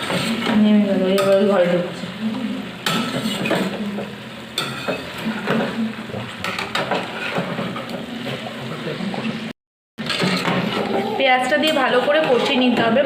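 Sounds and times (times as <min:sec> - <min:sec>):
spatula scraping a pan: 0:00.0 - 0:00.6, 0:02.8 - 0:03.8, 0:04.6 - 0:05.8, 0:06.4 - 0:08.4, 0:10.0 - 0:13.0
chicken frying in a pan: 0:00.0 - 0:09.0.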